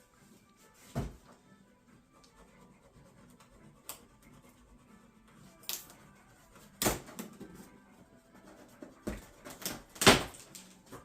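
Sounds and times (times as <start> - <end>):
cardboard knocks and scrapes: 0.8 - 1.4, 8.7 - 9.9.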